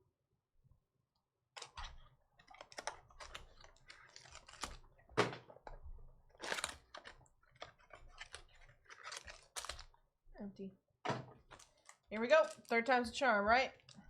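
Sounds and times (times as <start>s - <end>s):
cardboard and foil wrappers crinkling: 1.6s - 10.0s, 11.4s - 14.0s.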